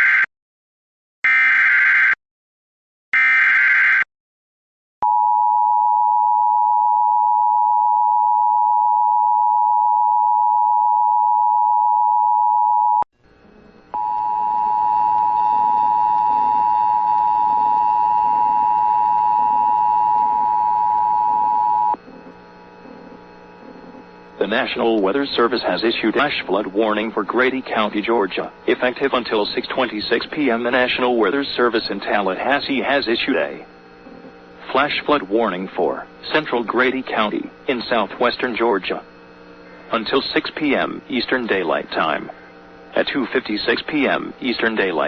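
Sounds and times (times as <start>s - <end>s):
hiss and hum: 13.2s - 45.0s
two-tone attention signal: 14.0s - 22.0s.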